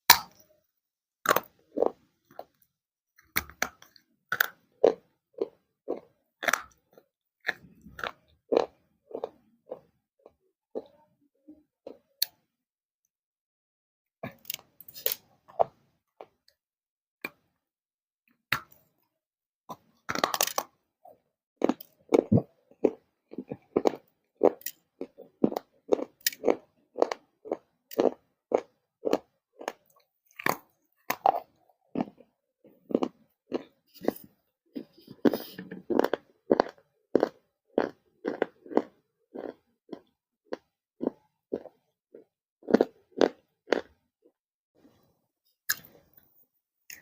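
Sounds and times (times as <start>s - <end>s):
person chewing crunchy clay: 0.0s - 0.4s, 1.2s - 2.6s, 3.2s - 11.0s, 14.2s - 16.4s, 19.7s - 44.0s.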